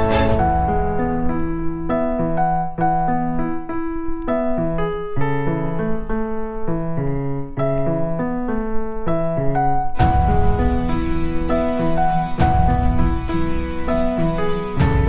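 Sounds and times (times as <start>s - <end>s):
piano melody: 0.0s - 15.0s.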